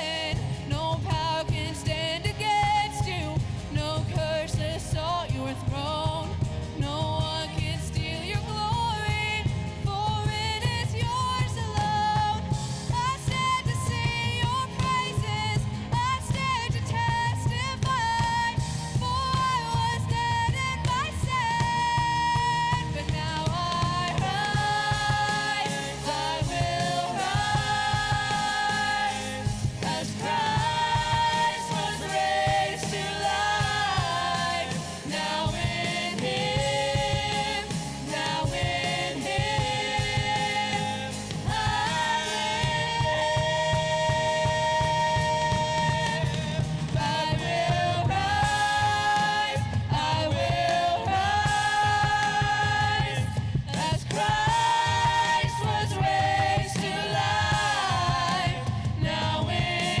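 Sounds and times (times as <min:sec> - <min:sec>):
group singing long notes: 0:00.0 - 0:00.7, 0:21.4 - 1:00.0
full band playing: 0:11.8 - 1:00.0.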